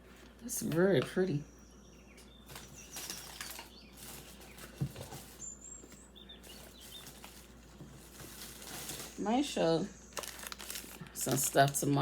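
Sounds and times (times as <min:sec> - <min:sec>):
rustling of packaging: 0:02.4 - 0:12.0.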